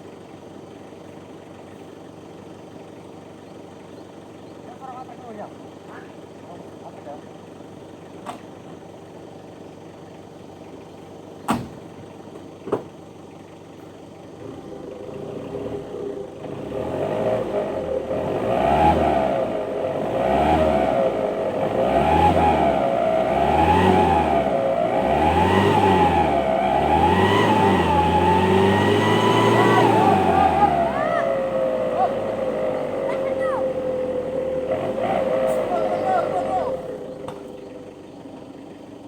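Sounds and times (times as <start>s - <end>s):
vehicle engine revving: 14.3s - 39.0s.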